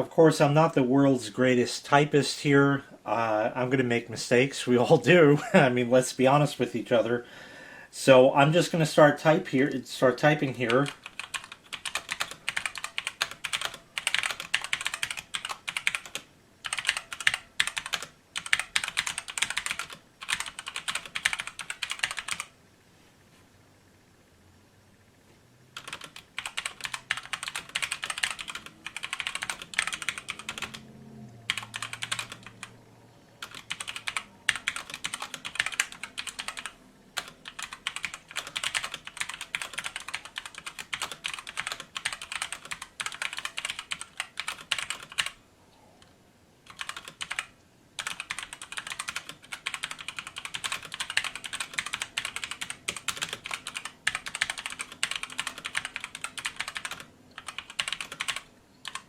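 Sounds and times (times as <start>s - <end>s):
typing on mechanical keyboard: 10.6s - 22.5s, 25.8s - 30.9s, 31.5s - 32.8s, 33.4s - 45.4s, 46.7s - 59.0s.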